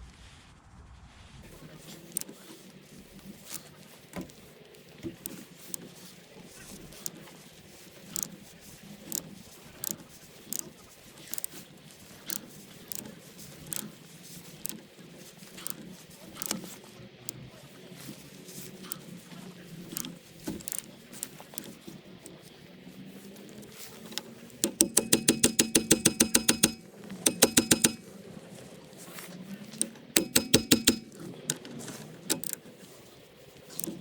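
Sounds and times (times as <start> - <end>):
ratchet wrench clicking: 24.6 - 28.0, 30.2 - 31.6, 32.3 - 32.6
tools clinking: 24.6 - 28.0, 30.2 - 32.6.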